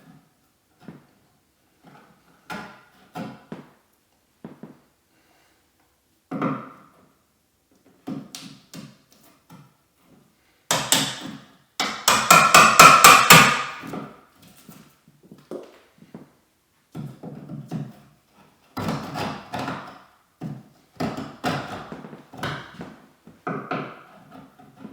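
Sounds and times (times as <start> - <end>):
hammer striking wood: 10.7 - 14.1.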